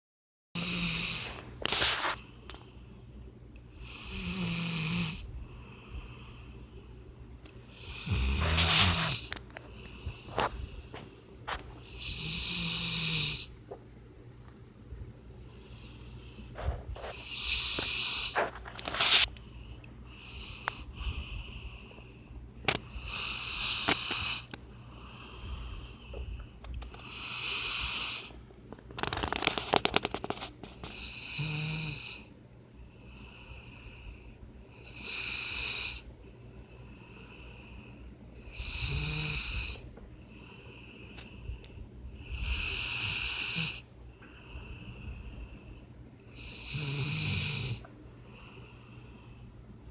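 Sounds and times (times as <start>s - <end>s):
puppy snoring: 0.6s - 2.3s, 3.7s - 6.5s, 7.6s - 13.6s, 15.4s - 19.3s, 22.8s - 28.4s, 29.0s - 32.3s, 33.0s - 36.1s, 36.7s - 41.5s, 42.1s - 49.2s
puppy snorting: 7.8s - 9.4s, 16.6s - 19.3s.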